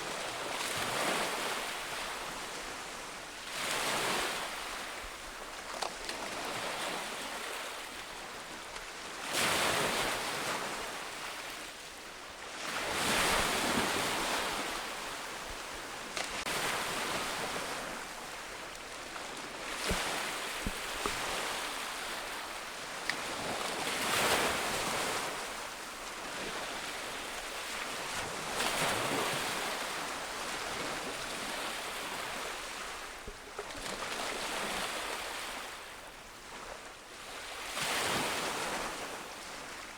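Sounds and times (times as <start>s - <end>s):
ocean waves breaking: 12.6s - 33.1s.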